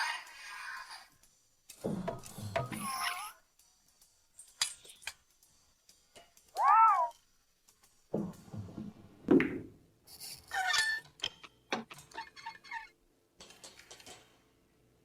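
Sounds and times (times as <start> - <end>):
cartoon squawk-like cry: 2.8 - 3.4, 6.6 - 7.2.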